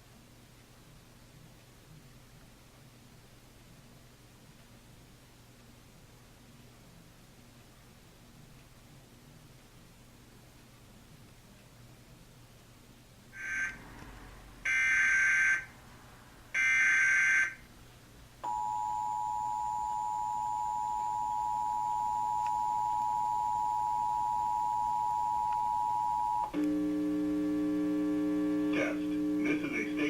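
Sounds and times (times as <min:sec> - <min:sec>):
steady low buzz: 0:13.4 - 0:16.6, 0:23.8 - 0:30.0
two-tone attention signal: 0:18.4 - 0:27.1.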